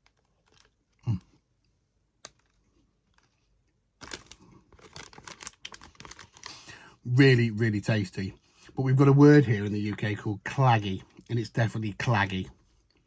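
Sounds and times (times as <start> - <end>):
crackly eating noises: 0.0 - 6.9.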